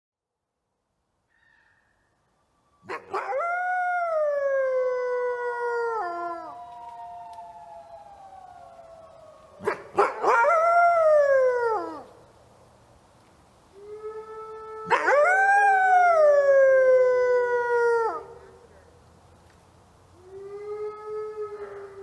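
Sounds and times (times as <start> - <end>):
wolves howling: 2.8 - 12.1, 13.8 - 18.4, 20.2 - 22.0.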